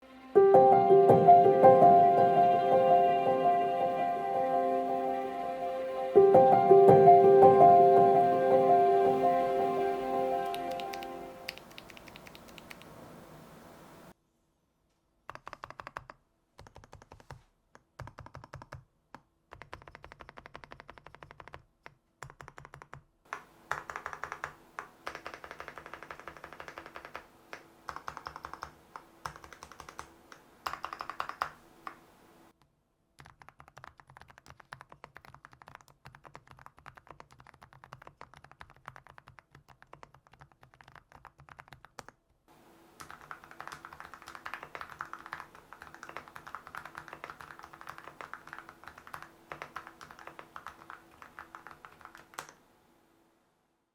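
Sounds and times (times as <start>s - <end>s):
mechanical keyboard typing: 10.5s - 13.0s, 15.3s - 32.0s, 33.2s - 42.2s, 43.0s - 52.6s.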